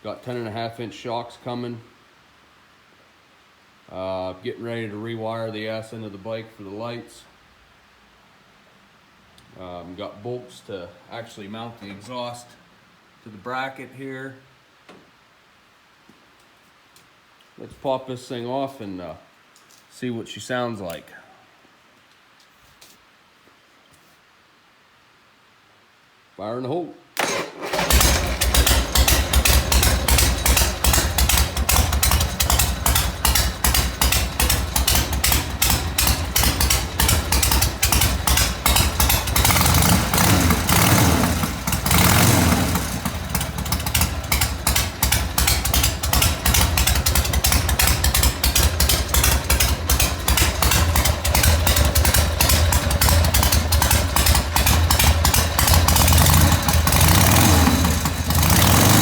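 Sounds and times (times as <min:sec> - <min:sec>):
motorcycle engine running: 0:27.6 - 0:59.0.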